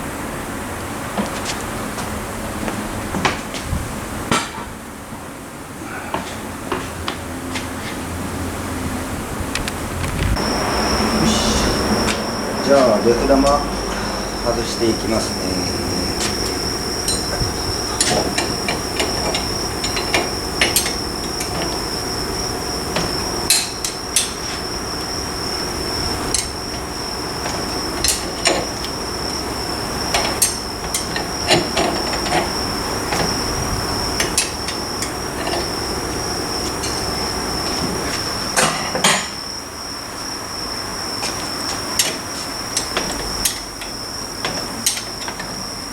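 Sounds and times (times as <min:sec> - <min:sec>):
high-pitched tone: 0:10.2 - 0:14.6.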